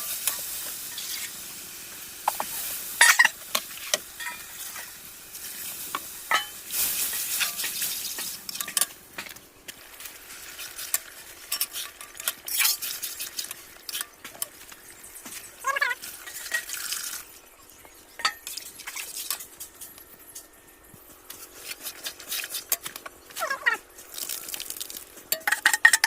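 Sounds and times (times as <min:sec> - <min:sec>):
chickpeas sizzling in oil: 0:00.0 - 0:19.6, 0:24.0 - 0:26.0
spatula scraping a pan: 0:06.3 - 0:08.8, 0:10.3 - 0:14.2, 0:21.3 - 0:22.9.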